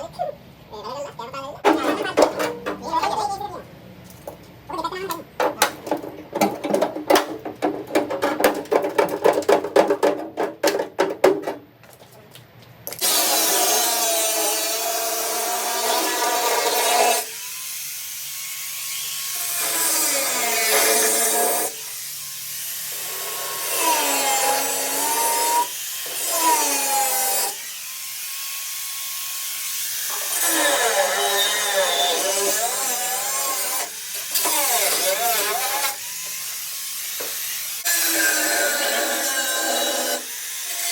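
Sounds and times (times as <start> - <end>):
rapid clicks or knocks: 5.4 - 12.2.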